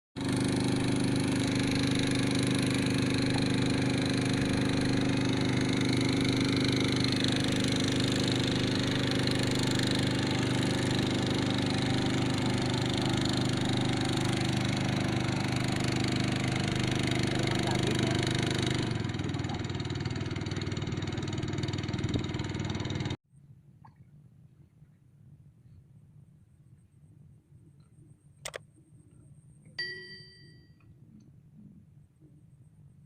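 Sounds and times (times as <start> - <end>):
small boat engine droning: 0.2 - 23.2, 23.8 - 33.0.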